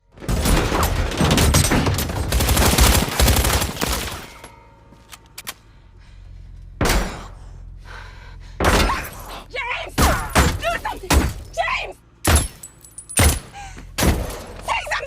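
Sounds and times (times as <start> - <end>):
machine gun fire: 0.3 - 4.2
bullets striking metal: 12.2 - 14.6.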